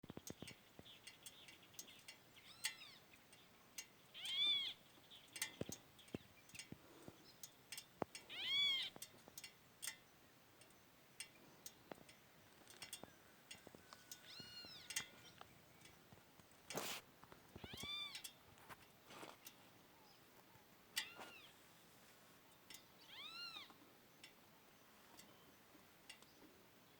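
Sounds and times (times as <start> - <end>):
faint clicks: 0.1 - 19.6, 20.4 - 21.5, 22.5 - 24.4, 25.1 - 26.5
cat meowing: 8.3 - 8.9, 17.6 - 18.2, 23.0 - 23.7.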